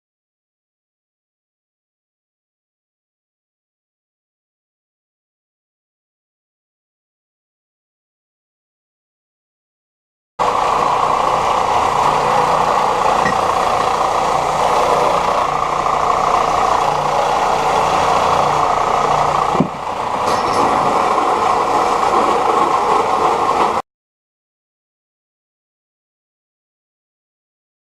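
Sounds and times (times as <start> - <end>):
power tool grinding steel: 10.4 - 23.8.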